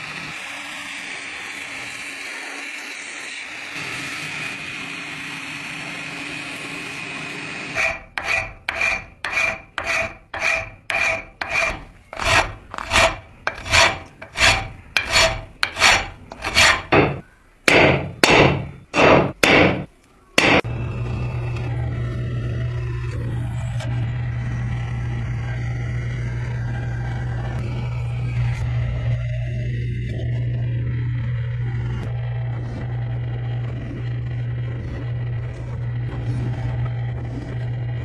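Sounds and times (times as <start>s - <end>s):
hand file rasping on steel: 7.8s - 18.4s
steady low machine hum: 7.8s - 38.0s.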